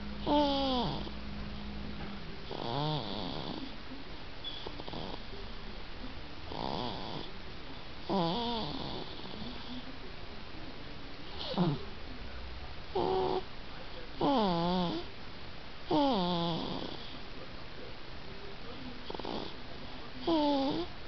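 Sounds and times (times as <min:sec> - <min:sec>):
baby snoring: 0:00.2 - 0:01.2, 0:02.5 - 0:03.7, 0:04.6 - 0:05.3, 0:06.5 - 0:07.3, 0:08.1 - 0:09.8, 0:11.3 - 0:11.8, 0:12.9 - 0:13.5, 0:14.2 - 0:15.1, 0:15.9 - 0:17.2, 0:19.1 - 0:19.6, 0:20.2 - 0:20.9.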